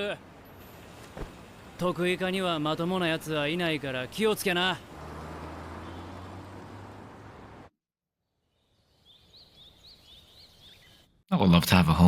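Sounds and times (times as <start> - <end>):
small bird chirps: 8.5 - 11.2.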